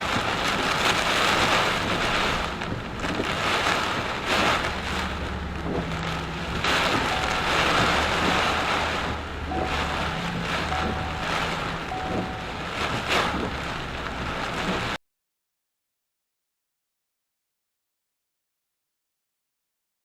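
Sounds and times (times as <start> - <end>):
heavy rain: 0.0 - 15.0
strong wind: 0.0 - 15.0
wind buffeting microphone: 0.0 - 15.0
low steady hum: 0.2 - 14.7.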